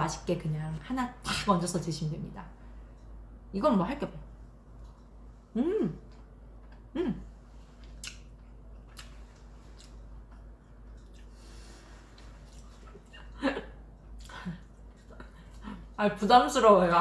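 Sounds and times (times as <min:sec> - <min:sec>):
chewing clicks and breaths: 0:02.8 - 0:03.2, 0:07.7 - 0:16.0
woman humming: 0:05.5 - 0:06.2, 0:06.9 - 0:07.4.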